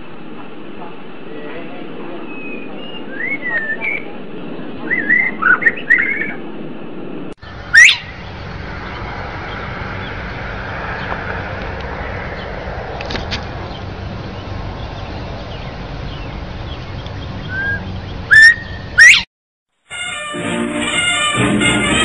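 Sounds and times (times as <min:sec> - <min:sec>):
bird twittering and whistling: 0:02.3 - 0:04.1, 0:04.8 - 0:06.4, 0:07.7 - 0:10.2, 0:15.5 - 0:19.2
loud rising note: 0:19.9 - 0:22.0.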